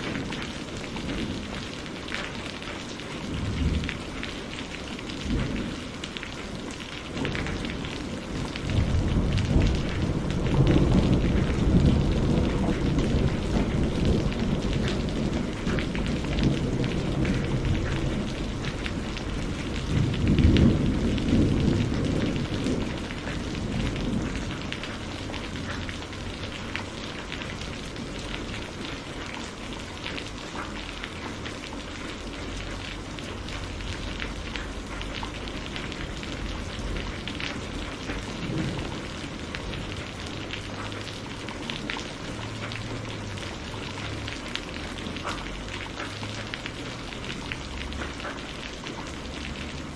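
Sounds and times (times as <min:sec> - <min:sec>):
rain on hard surfaces: 0:00.0 - 0:49.9
low rolling thunder: 0:03.1 - 0:29.8, 0:32.4 - 0:49.9.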